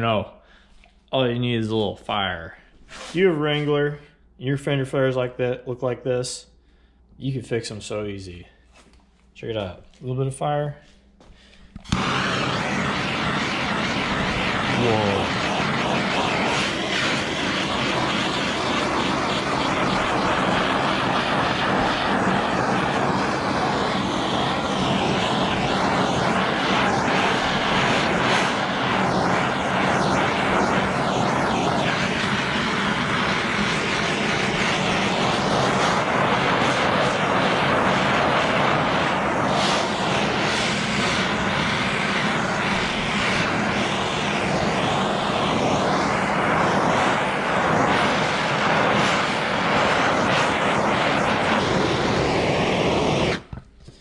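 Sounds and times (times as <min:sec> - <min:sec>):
gas torch roaring: 0:11.5 - 0:54.0.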